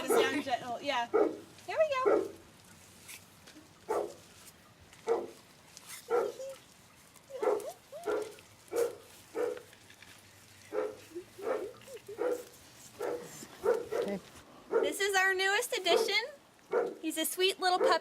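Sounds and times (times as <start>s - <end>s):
puppy yipping and barking: 6.1s - 6.6s, 7.3s - 9.6s, 10.7s - 14.2s, 17.8s - 18.0s.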